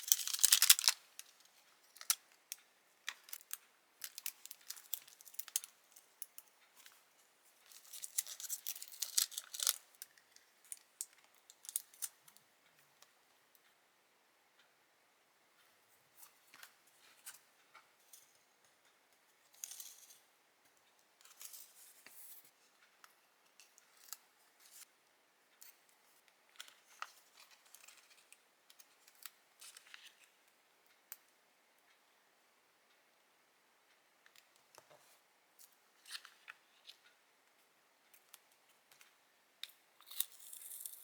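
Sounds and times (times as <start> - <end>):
paper rustling: 0.0 - 1.0, 7.7 - 9.8.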